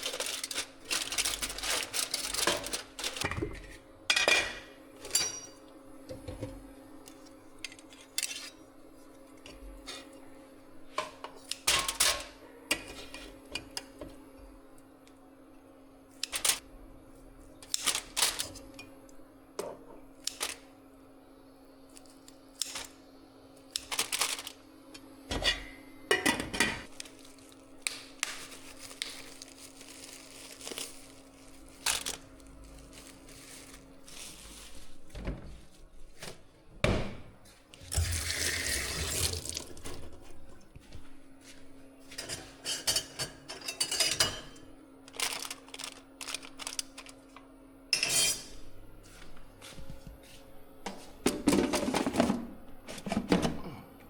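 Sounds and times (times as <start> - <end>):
dishes and utensils clinking: 2.4 - 6.5, 42.1 - 44.7, 47.9 - 48.6.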